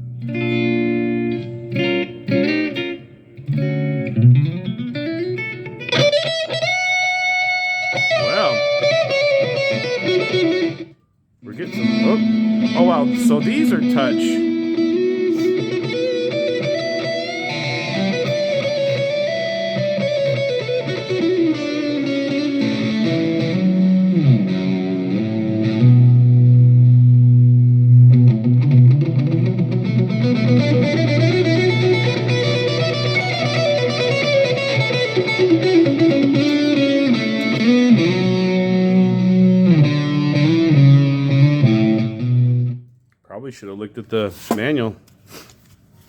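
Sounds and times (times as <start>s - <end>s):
electric guitar runs: 11.7s - 42.8s.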